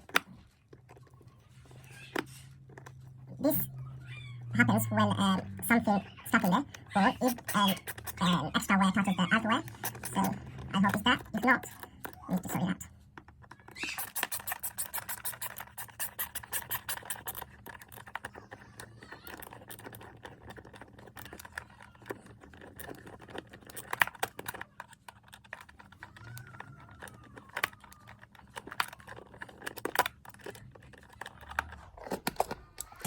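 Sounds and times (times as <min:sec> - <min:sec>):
scrapes on plastic plate: 0:13.7 - 0:17.7.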